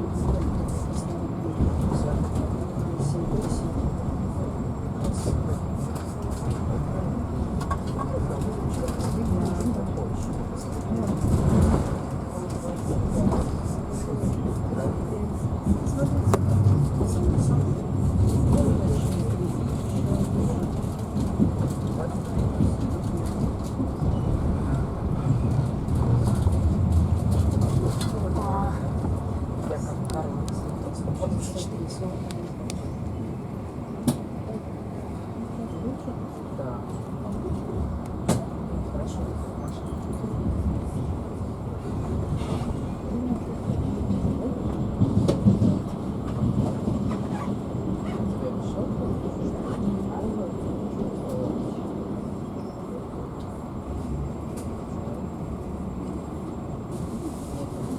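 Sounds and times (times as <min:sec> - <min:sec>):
train wheels rumbling on rails: 0:00.0 - 0:57.9.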